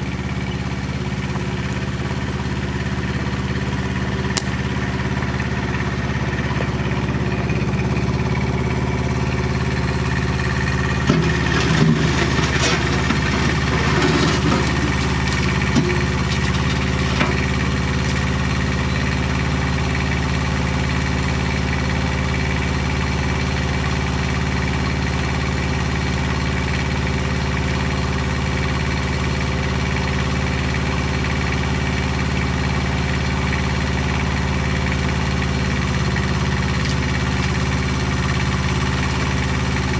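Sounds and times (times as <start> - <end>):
engine idling: 0.0 - 39.9
clattering knocks: 11.0 - 18.5.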